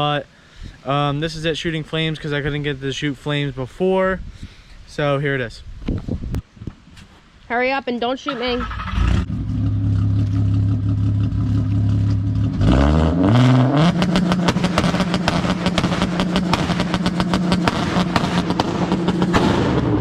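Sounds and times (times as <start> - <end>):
car engine revving: 8.7 - 20.0
exhaust crackles and pops: 8.8 - 20.0.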